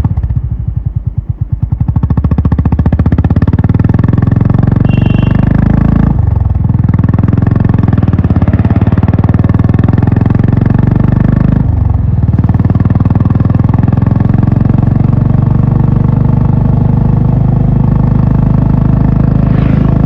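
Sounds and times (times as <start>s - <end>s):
motorcycle engine pulling away: 0.0s - 20.0s.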